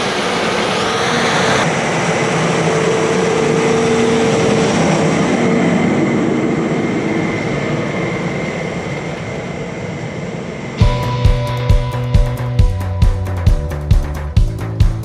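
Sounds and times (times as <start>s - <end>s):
diesel engine droning: 0.0s - 8.8s, 10.8s - 15.0s.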